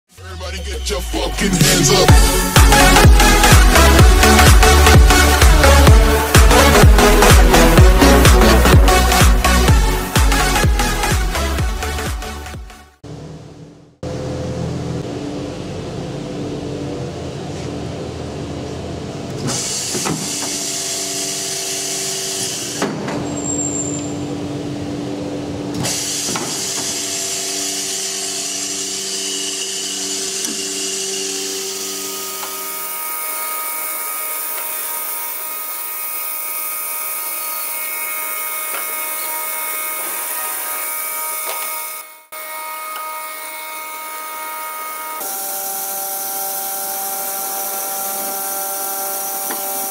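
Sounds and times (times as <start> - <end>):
router spindle cutting wood: 0.8 - 12.1, 19.4 - 22.9, 25.8 - 49.9.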